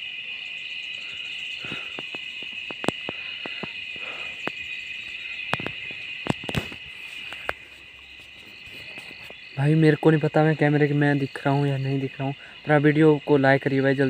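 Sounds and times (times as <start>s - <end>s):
crickets chirping: 0.0s - 14.0s
sharp clicks and snaps: 1.9s - 4.6s, 5.5s - 7.6s.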